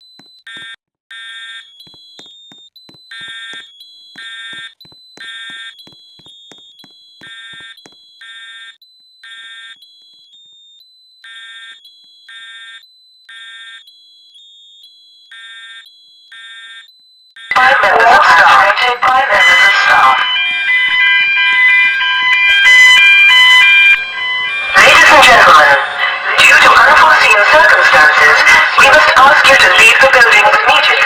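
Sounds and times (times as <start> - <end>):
fire alarm buzzy pulses: 0.0 - 31.0
steady high tone: 17.5 - 31.0.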